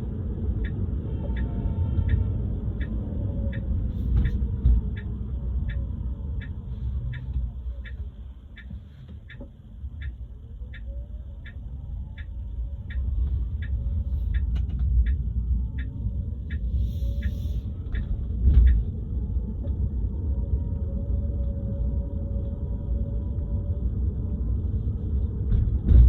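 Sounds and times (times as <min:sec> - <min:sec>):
road rumble in car cabin: 0:00.0 - 0:26.0
regular ticking: 0:02.8 - 0:17.4.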